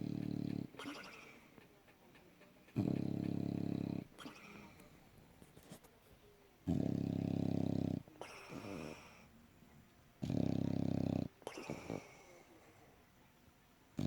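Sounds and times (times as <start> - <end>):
dog snoring: 0.0 - 1.4, 2.7 - 4.8, 6.6 - 9.3, 10.2 - 12.5.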